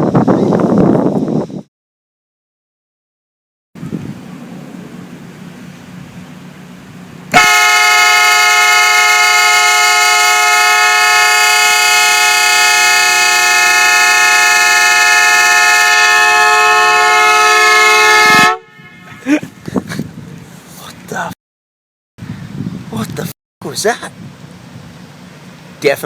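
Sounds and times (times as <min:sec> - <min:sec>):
air horn blaring chord: 0:07.3 - 0:19.2.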